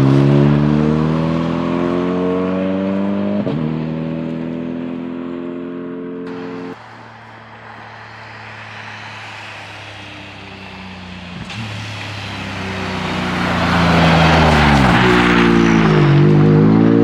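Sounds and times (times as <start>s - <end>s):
rally car engine approaching: 0.0s - 17.0s.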